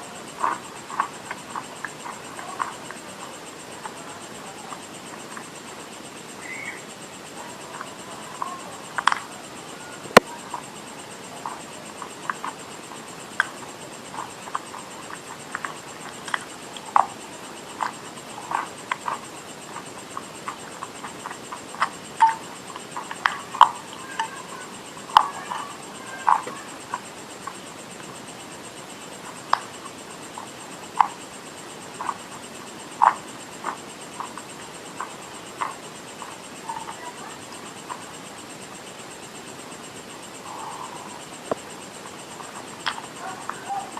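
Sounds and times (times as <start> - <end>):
close chewing and crunching: 0.3 - 5.4, 13.3 - 28.2, 28.8 - 38.2, 40.4 - 43.9.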